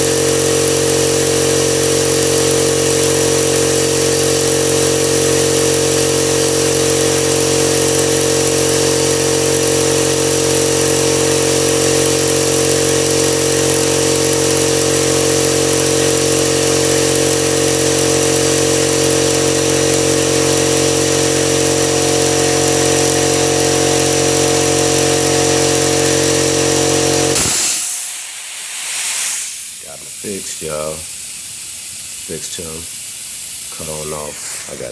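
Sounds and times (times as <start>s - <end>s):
air compressor running: 0.0s - 34.9s
short hiss of air: 27.4s - 34.9s.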